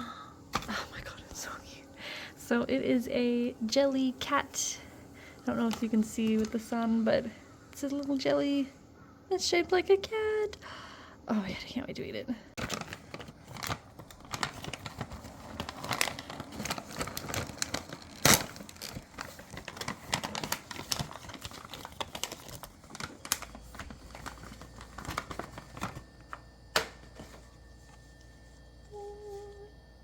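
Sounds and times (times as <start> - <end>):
snack wrapper crinkling and tearing: 12.6 - 26.1.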